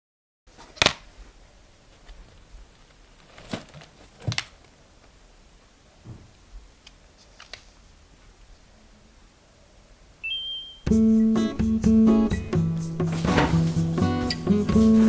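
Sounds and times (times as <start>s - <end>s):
soft thud: 6.0s - 6.4s, 13.1s - 13.9s.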